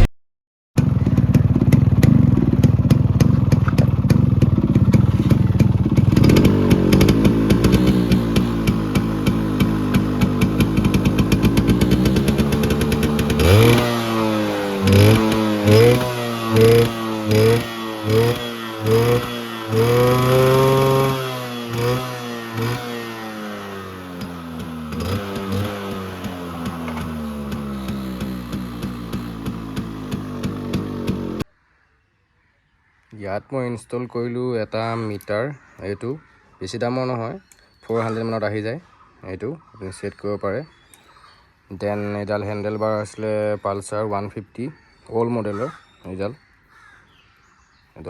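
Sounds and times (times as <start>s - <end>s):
two-stroke motorcycle engine revving: 0.8s - 31.5s.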